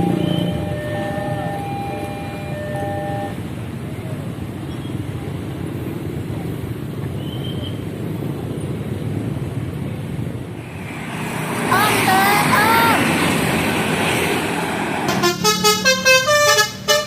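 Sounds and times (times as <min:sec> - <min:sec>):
multi-tone vehicle horn: 0:00.0 - 0:03.4, 0:15.0 - 0:17.0
passing vehicle traffic: 0:00.0 - 0:17.0.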